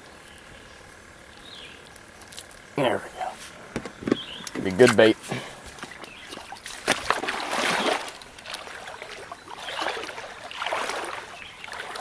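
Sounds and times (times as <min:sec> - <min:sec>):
water splashing and sloshing: 0:03.3 - 0:12.0.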